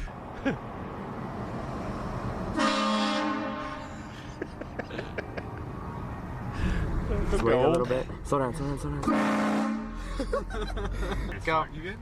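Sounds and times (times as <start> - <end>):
train horn blast: 2.5 - 4.1, 9.0 - 10.1.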